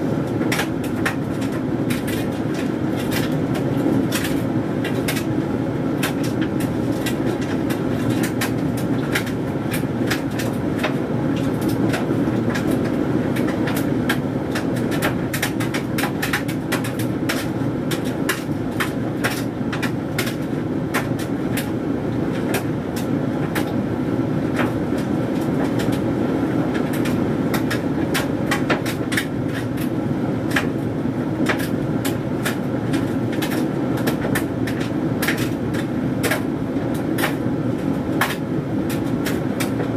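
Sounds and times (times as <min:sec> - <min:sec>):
tumble dryer running: 0:00.0 - 0:39.9
irregular clicks and taps: 0:06.0 - 0:21.7, 0:26.7 - 0:29.9, 0:30.5 - 0:30.7.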